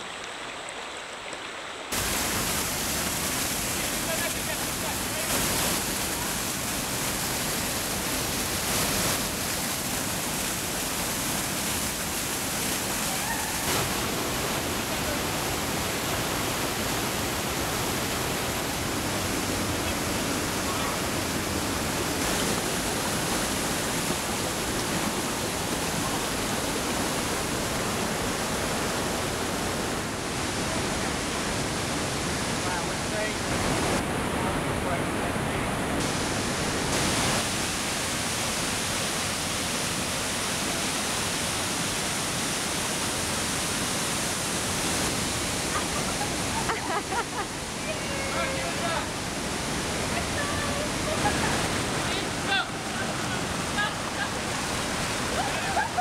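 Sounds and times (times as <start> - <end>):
fast-flowing water rushing: 0.0 - 56.0.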